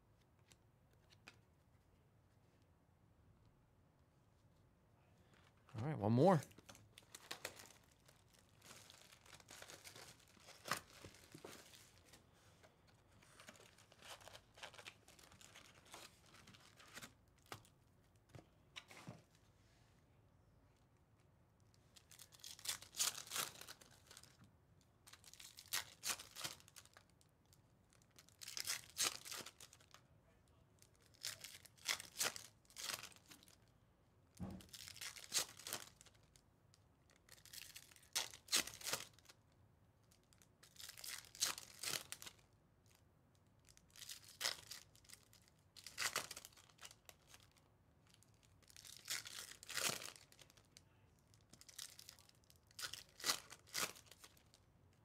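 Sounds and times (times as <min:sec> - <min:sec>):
foil wrappers torn and crinkled: 0:06.5 - 0:12.0, 0:13.3 - 0:17.7, 0:22.0 - 0:24.4, 0:25.0 - 0:27.2, 0:27.9 - 0:30.0, 0:30.8 - 0:33.6, 0:34.6 - 0:36.4, 0:37.1 - 0:39.4, 0:40.2 - 0:42.4, 0:43.6 - 0:54.6.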